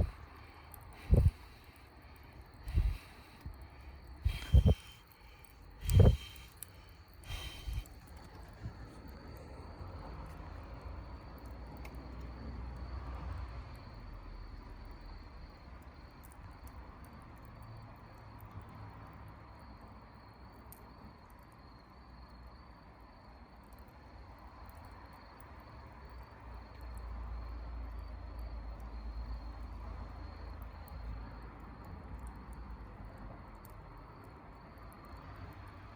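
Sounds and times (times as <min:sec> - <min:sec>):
low rumble: 0:00.0 - 0:00.2, 0:01.0 - 0:01.5, 0:04.2 - 0:05.0
campfire crackling: 0:00.0 - 0:12.9
crickets trilling: 0:00.0 - 0:35.9.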